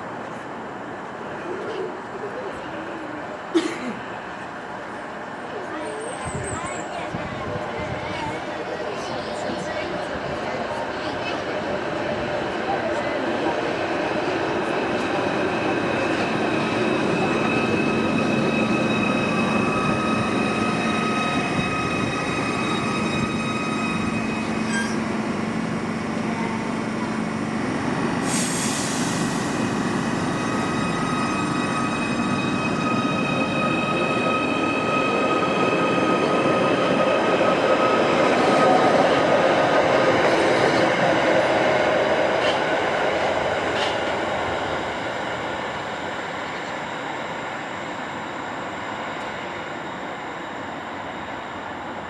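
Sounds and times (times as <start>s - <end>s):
electric train rumble and whine: 0.0s - 52.0s
brief hiss: 28.2s - 29.8s.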